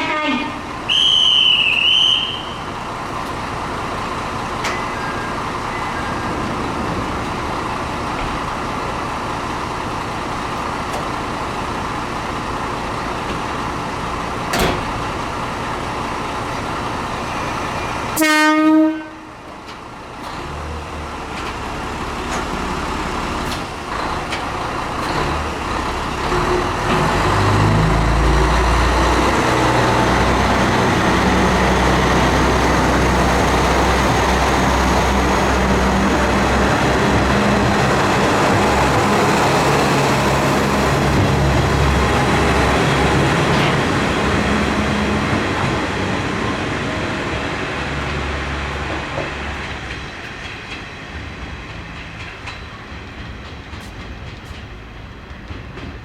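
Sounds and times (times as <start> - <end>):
train horn blast: 0.0 - 2.5, 18.2 - 19.4
diesel railcar running: 0.0 - 56.0.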